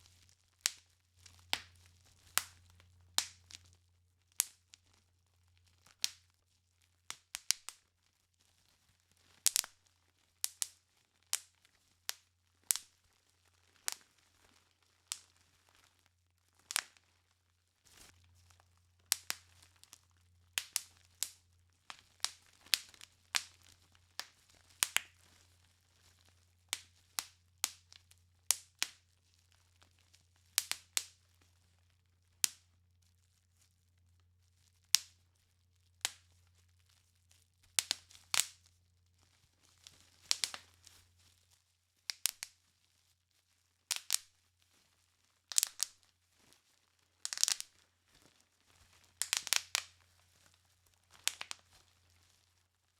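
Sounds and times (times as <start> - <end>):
bubble wrap popping: 0.0 - 52.9
plastic sheet crinkling: 11.2 - 32.3, 33.1 - 52.7.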